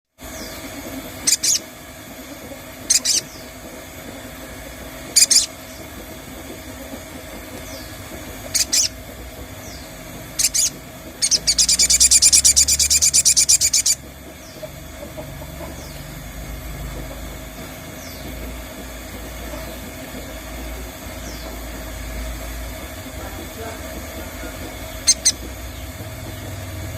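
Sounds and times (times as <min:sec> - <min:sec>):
fast rattling bird chatter: 0:00.2 - 0:26.9
short high bird calls: 0:00.4 - 0:01.7, 0:02.8 - 0:03.6, 0:05.2 - 0:05.8, 0:07.6 - 0:09.0, 0:25.0 - 0:25.8.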